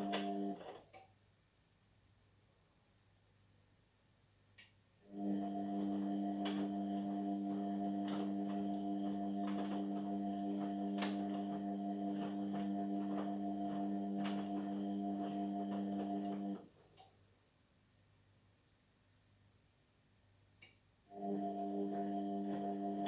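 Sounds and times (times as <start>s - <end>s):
washing machine drain pump humming: 0.0s - 0.7s, 5.1s - 16.7s, 21.2s - 23.0s.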